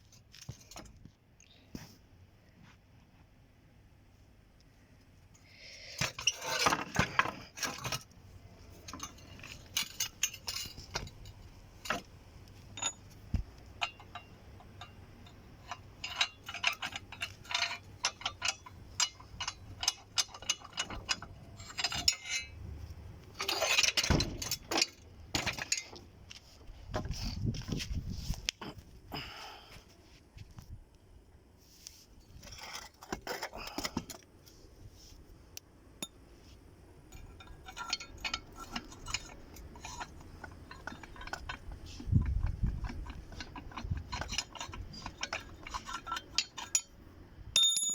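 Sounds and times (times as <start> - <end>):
metal parts clinking and rattling: 0.1 - 1.0, 5.9 - 26.1, 37.1 - 47.0, 47.6 - 47.9.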